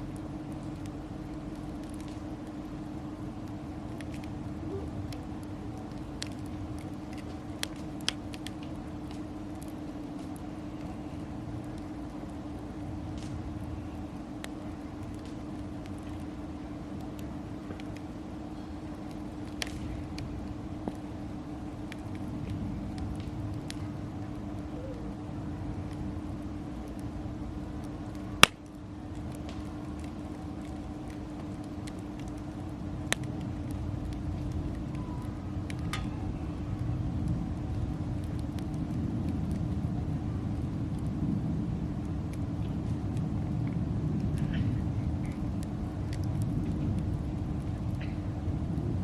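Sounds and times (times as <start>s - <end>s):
faint hum: 0.0s - 49.0s
firewood burning and crackling: 0.0s - 49.0s
low rumble: 32.7s - 49.0s.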